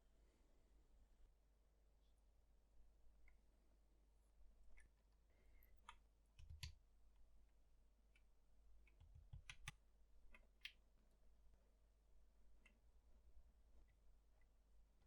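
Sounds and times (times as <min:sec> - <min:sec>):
mechanical keyboard keystrokes: 0:09.0 - 0:09.7.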